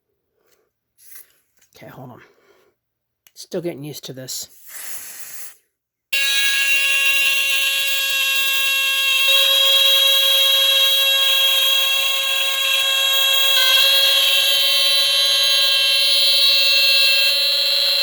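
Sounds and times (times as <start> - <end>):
smoke detector high-pitched squeal: 6.2 - 18.0.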